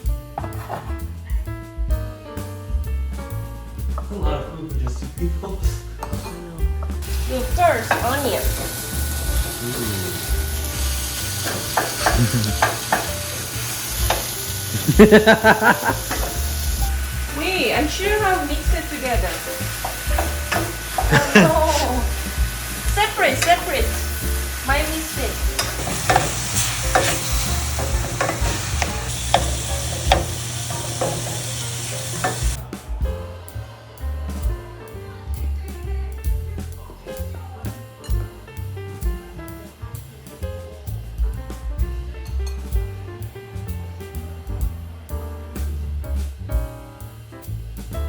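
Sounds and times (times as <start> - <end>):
background music: 0.0 - 48.0
onion sizzling in a pan: 6.8 - 32.7
utensil clicking against pan: 11.4 - 13.2, 14.0 - 14.4, 19.2 - 21.1, 25.5 - 32.6.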